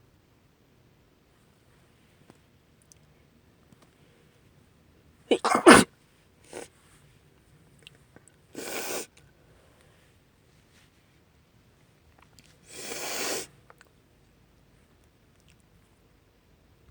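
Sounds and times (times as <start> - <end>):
woman sneezing: 5.3 - 5.9
woman sniffling: 5.3 - 5.9.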